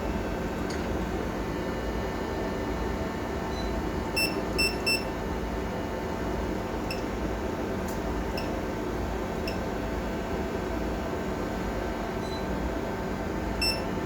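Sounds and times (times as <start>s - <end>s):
machinery hum: 0.0s - 12.1s.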